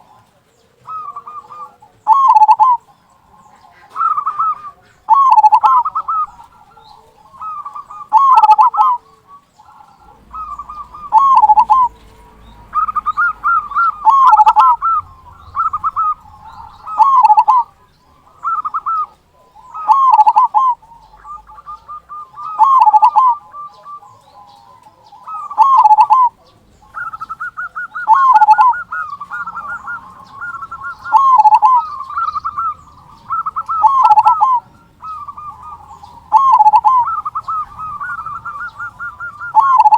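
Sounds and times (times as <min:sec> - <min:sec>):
dove cooing: 0:00.0 - 0:39.9.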